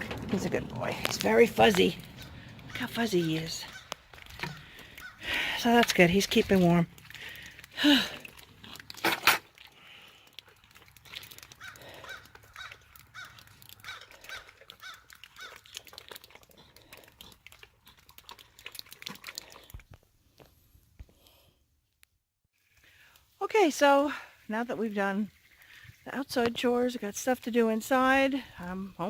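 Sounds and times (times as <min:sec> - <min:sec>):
crows cawing: 0:02.1 - 0:05.5, 0:11.5 - 0:15.6.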